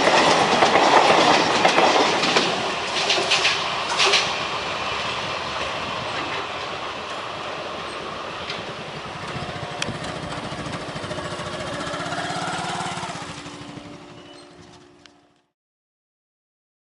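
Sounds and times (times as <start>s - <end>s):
train wheels rumbling on rails: 0.0s - 15.5s
pulsing hum: 8.8s - 15.4s.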